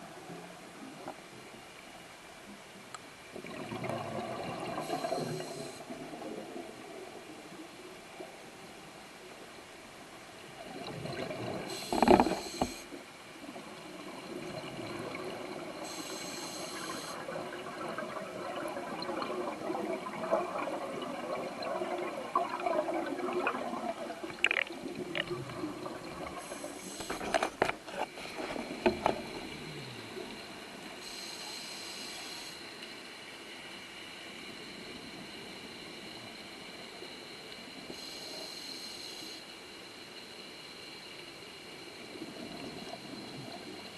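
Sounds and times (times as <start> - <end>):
gurgling exhaled bubbles: 3.4 - 7.0, 10.6 - 12.8, 13.6 - 27.4
regulator inhale hisses: 4.8 - 5.9, 11.7 - 13.0, 15.8 - 17.3, 26.4 - 27.5, 31.0 - 32.8, 37.9 - 39.6.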